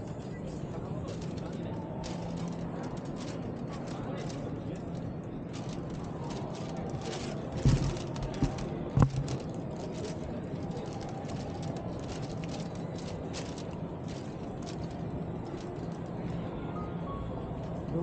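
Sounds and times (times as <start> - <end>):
exhibition hall crowd din: 0.0 - 18.0.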